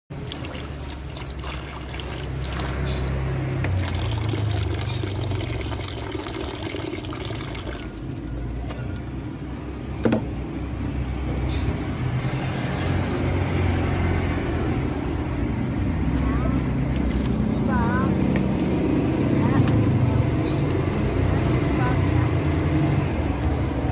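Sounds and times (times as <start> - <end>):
water pouring and splashing: 0.1 - 9.0, 16.7 - 23.9.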